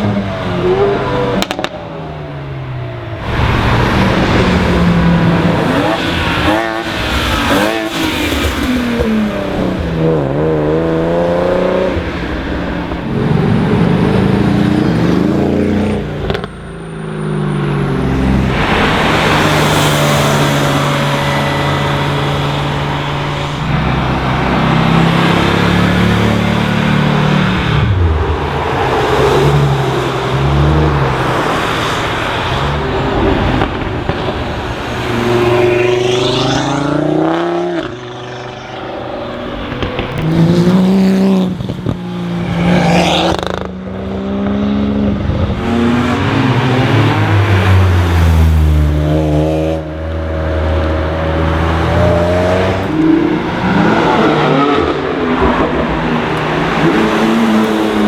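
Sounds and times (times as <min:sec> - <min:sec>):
cars accelerating past: 0:00.0 - 0:58.0
road noise: 0:00.0 - 0:58.0.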